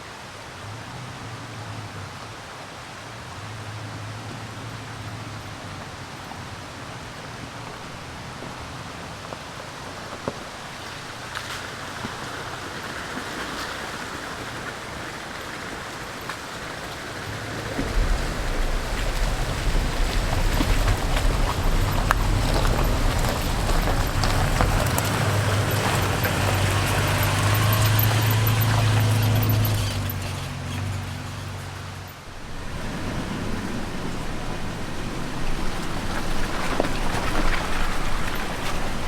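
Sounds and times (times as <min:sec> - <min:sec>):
stream rushing: 0:00.0 - 0:39.0
low engine hum: 0:00.1 - 0:39.0
low rumble: 0:17.3 - 0:30.3
tyres clicking on stones: 0:19.6 - 0:31.7.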